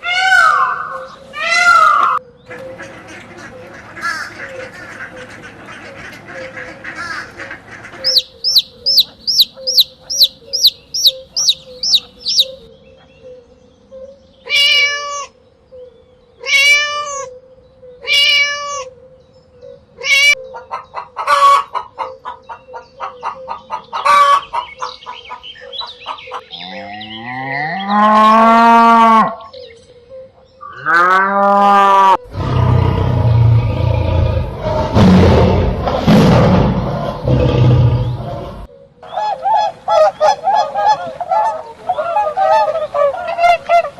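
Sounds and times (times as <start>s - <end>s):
rising and falling animal calls: 0.0s - 2.2s, 7.0s - 12.7s, 30.6s - 43.9s
rough noisy animal call: 2.8s - 12.7s, 30.6s - 43.9s
pitched animal calls: 4.0s - 12.7s
rapid high chirps: 8.0s - 12.6s.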